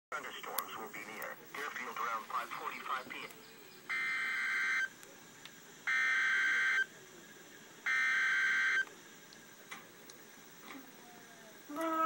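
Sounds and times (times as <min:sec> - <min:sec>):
buzzing two-tone data bursts: 0:02.7 - 0:05.0, 0:05.8 - 0:06.9, 0:07.8 - 0:08.9.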